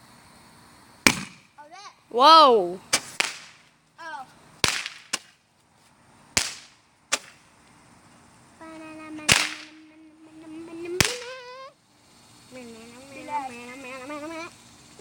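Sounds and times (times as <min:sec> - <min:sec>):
child calling out: 0:01.6 - 0:02.8, 0:04.0 - 0:04.3, 0:08.6 - 0:11.8, 0:12.5 - 0:14.6
fireworks cracking: 0:02.9 - 0:03.7, 0:04.6 - 0:05.4, 0:06.3 - 0:07.5, 0:08.9 - 0:11.7.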